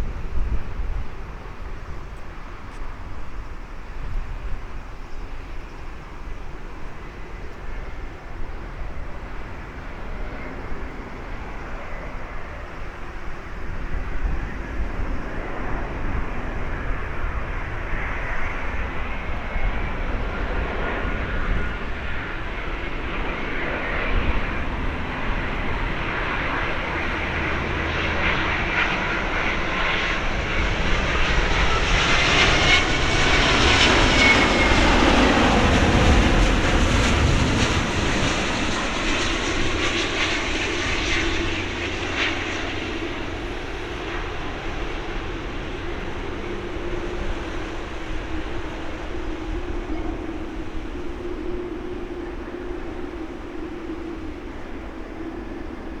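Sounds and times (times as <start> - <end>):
jet engines roaring: 0.0 - 56.0
faint pitch-bending whine: 19.0 - 56.0.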